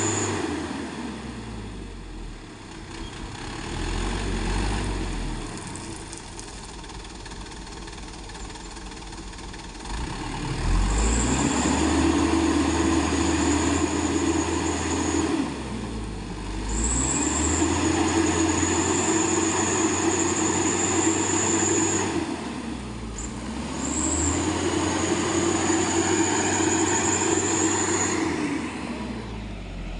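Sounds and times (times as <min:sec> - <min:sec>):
truck engine revving: 0:09.8 - 0:29.9.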